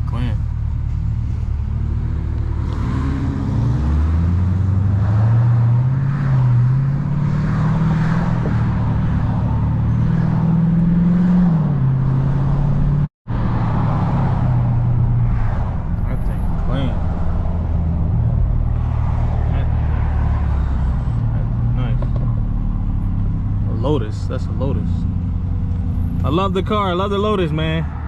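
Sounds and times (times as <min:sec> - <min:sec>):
road noise: 0:00.0 - 0:28.0.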